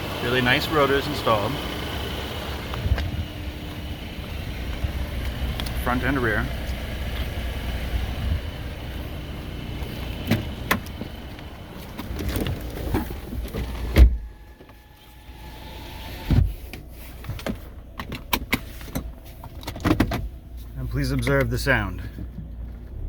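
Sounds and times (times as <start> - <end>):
car door thump: 13.6 - 14.4, 16.2 - 16.6.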